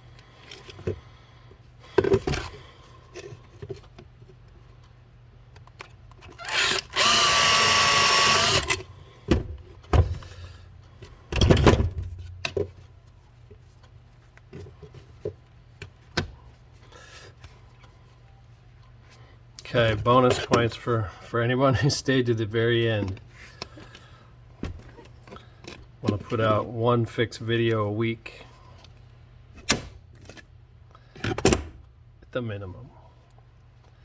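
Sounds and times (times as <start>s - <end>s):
electric drill whining: 6.4s - 8.8s.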